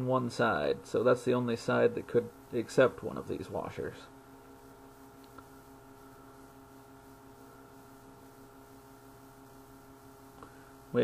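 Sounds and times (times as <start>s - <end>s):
faint electrical hum: 0.0s - 11.0s
faint click: 5.2s - 5.5s.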